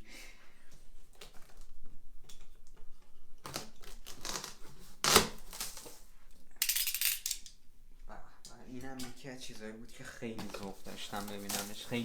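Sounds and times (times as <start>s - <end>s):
packaging crinkling and rustling: 3.4s - 6.1s, 10.4s - 12.0s.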